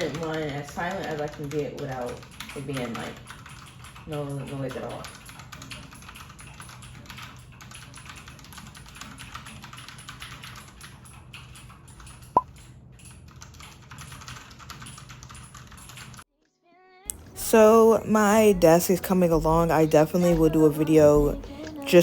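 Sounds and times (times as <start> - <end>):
mechanical keyboard typing: 0.0 - 16.2
sharp keyboard click: 0.0 - 16.2.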